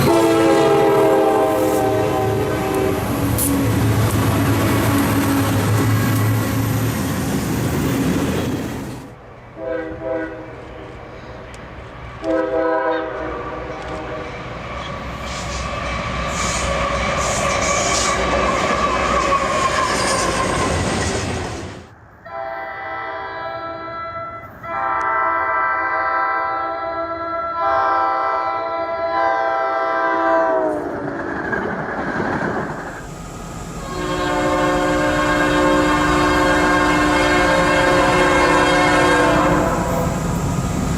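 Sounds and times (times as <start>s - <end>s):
locomotive air horn: 0.0s - 5.8s, 9.6s - 11.0s, 12.2s - 14.3s, 22.3s - 30.9s, 33.8s - 40.4s
train rumbling past: 0.0s - 40.9s.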